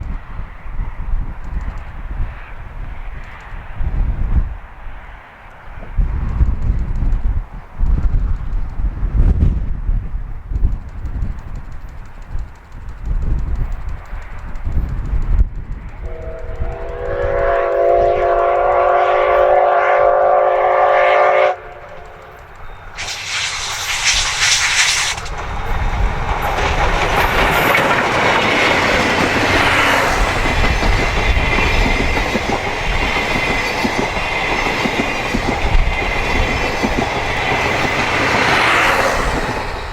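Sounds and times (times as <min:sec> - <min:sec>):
train wheels clattering on rails: 0:05.4 - 0:20.3, 0:21.6 - 0:39.9
steam locomotive whistle: 0:16.0 - 0:22.2
loud steam hiss: 0:22.9 - 0:39.9.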